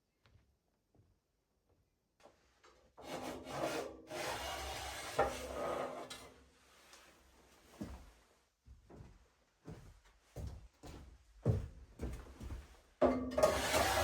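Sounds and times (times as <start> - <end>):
rough scraping rub: 13.4 - 14.0.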